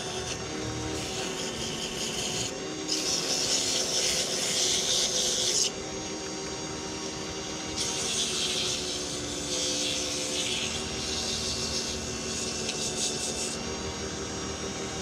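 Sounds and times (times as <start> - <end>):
sandpaper rasping on spinning wood: 0.0 - 5.7, 7.8 - 13.6
lathe motor hum: 0.0 - 15.0.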